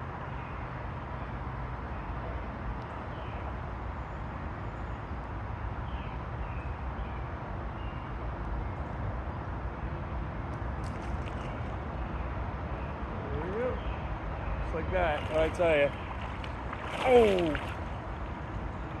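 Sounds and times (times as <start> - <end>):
wind: 0.0 - 19.0
creek water rushing: 13.8 - 19.0.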